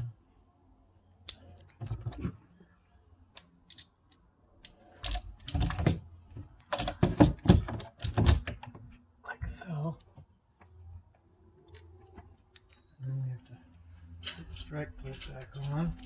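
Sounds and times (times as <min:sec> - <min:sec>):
door lock parts clicking and clunking: 0:01.2 - 0:02.5, 0:03.3 - 0:09.0.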